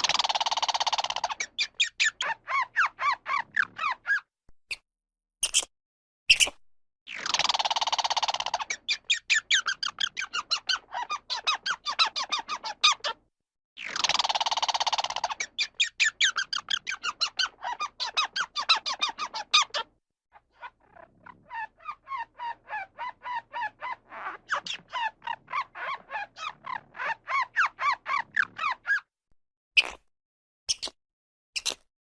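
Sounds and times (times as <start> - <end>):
squirrel chirping: 0.0 - 4.2, 7.3 - 13.2, 13.9 - 19.9, 20.9 - 29.0.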